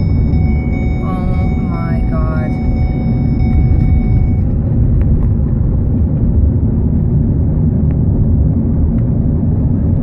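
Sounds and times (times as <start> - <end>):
car driving road and wind noise: 0.0 - 10.0.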